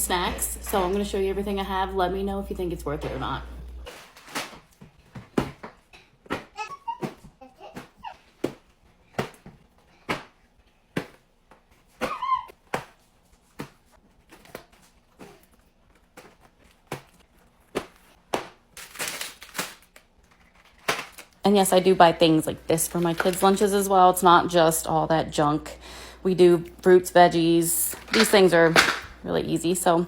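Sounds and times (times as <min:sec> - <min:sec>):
plastic wrapper crinkling: 0:18.6 - 0:21.4, 0:22.6 - 0:23.8.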